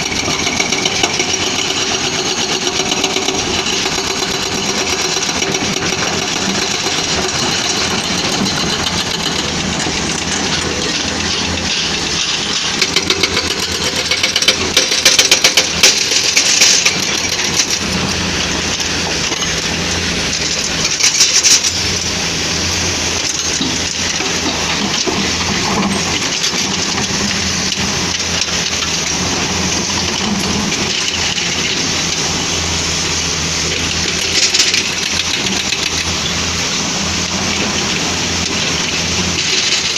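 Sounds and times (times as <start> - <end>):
heavy rattling and clattering: 0.0 - 19.6
excavator diesel engine running: 0.0 - 39.9.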